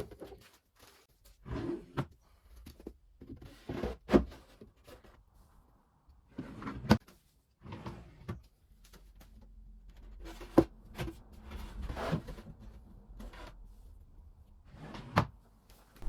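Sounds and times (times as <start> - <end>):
drawers sliding: 14.7 - 15.3.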